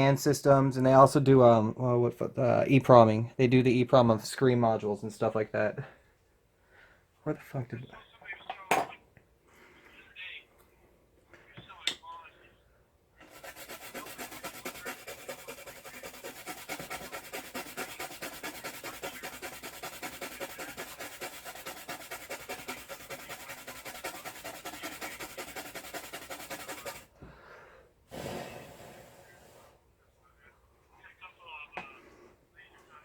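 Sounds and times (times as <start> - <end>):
rapid rubbing strokes: 13.2 - 27.1.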